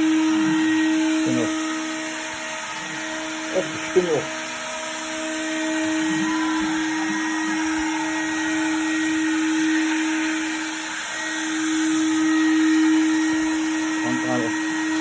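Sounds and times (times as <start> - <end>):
milling machine spindle whining: 0.0 - 15.0.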